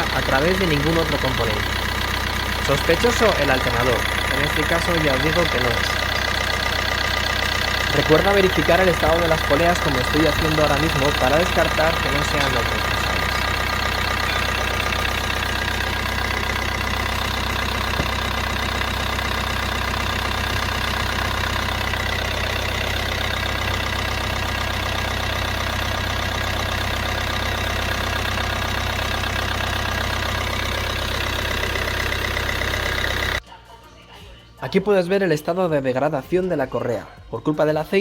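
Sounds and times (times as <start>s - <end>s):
diesel engine idling: 0.0s - 33.4s.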